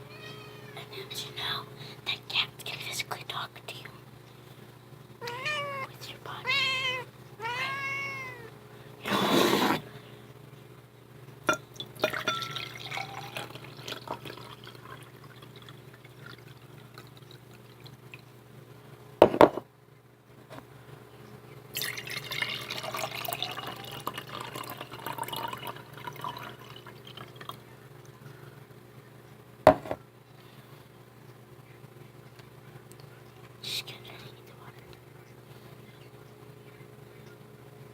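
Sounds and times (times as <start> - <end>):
steady low hum: 0.0 - 37.9
water pouring into a glass: 11.5 - 18.3, 21.8 - 27.6.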